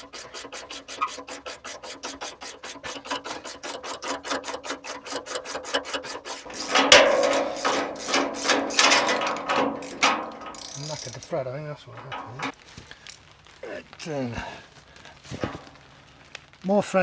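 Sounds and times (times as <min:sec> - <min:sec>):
nut grinding on threaded bar: 0:00.0 - 0:11.4, 0:12.0 - 0:12.6
sharp crack: 0:00.0 - 0:13.6
socket ratchet clicking: 0:00.7 - 0:11.2.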